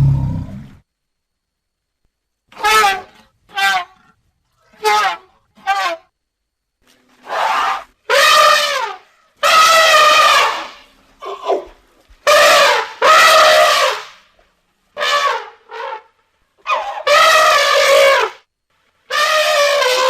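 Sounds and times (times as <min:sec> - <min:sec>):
elephant trumpeting: 0:02.6 - 0:06.1, 0:07.2 - 0:11.7, 0:12.3 - 0:14.2, 0:15.0 - 0:18.4, 0:19.1 - 0:20.0.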